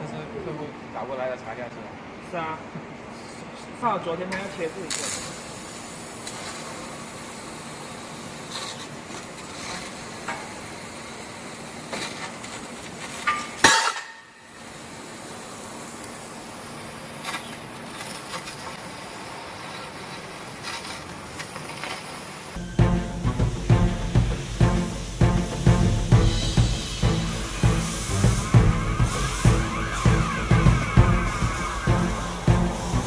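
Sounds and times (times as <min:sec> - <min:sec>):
machine hum and hiss: 0:00.0 - 0:33.0.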